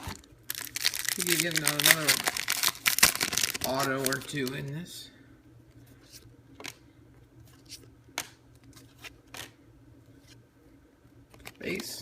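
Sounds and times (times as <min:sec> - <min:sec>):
trading cards flicking and rustling: 0:00.0 - 0:04.8, 0:07.5 - 0:09.6.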